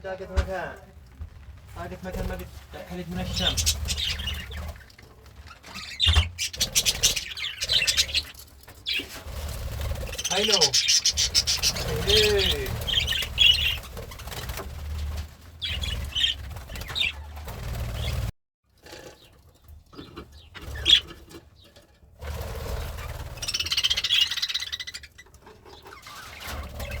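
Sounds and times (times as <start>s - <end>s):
budgerigar chirping: 5.7s - 8.3s, 10.2s - 13.9s.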